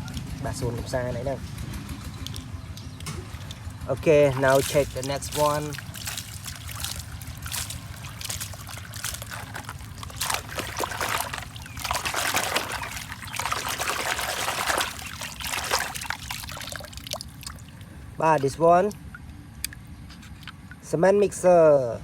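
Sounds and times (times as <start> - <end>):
water running and splashing: 3.2 - 18.6.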